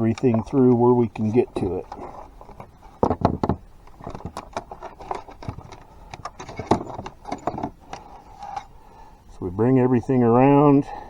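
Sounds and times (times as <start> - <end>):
small parts clicking and rattling: 0.0 - 8.7.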